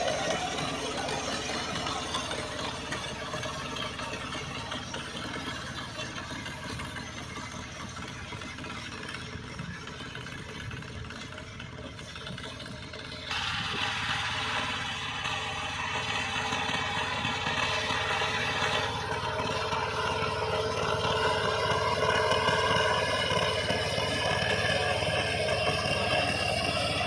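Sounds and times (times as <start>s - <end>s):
diesel engine running: 0.0s - 27.0s.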